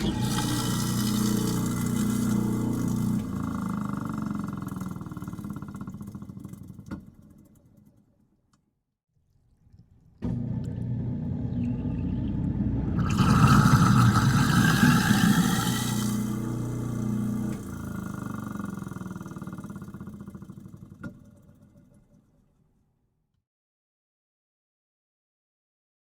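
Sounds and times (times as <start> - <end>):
garbage disposal motor humming: 0.0 - 7.6, 10.2 - 21.4.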